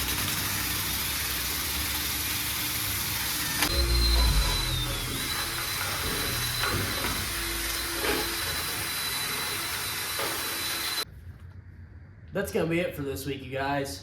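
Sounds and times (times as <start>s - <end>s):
wire wheel grinding metal: 0.0s - 11.0s.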